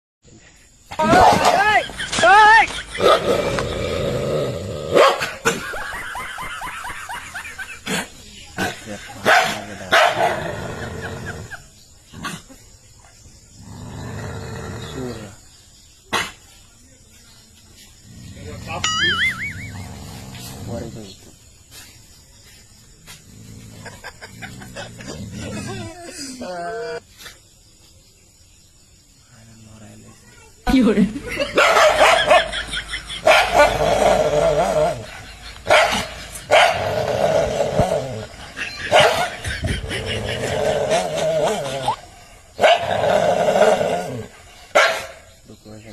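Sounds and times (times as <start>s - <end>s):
dog growling: 3.0s - 5.0s, 13.6s - 15.4s, 18.0s - 18.8s, 19.6s - 21.0s, 23.3s - 27.0s, 33.4s - 42.1s, 42.8s - 44.4s
dog barking: 5.0s - 5.4s, 9.2s - 10.4s, 31.5s - 32.6s, 33.2s - 33.8s, 35.7s - 36.9s, 38.9s - 39.4s, 42.6s - 43.0s, 44.7s - 45.3s.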